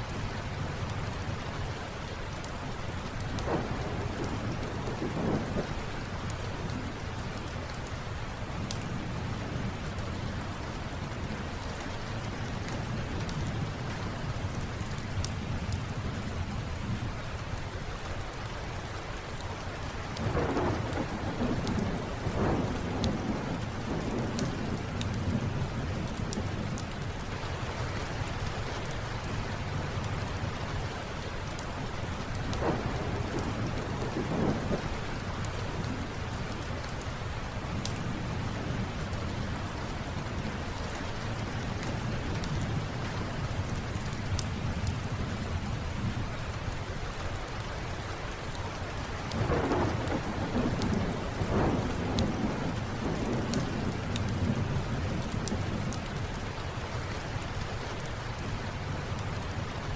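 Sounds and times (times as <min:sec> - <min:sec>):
steady rain: 0:00.0 - 0:59.9
rolling thunder: 0:03.1 - 0:06.9, 0:20.2 - 0:27.0, 0:32.2 - 0:37.0, 0:49.3 - 0:56.0
light ticks: 0:53.2 - 0:54.4, 0:55.2 - 0:56.1.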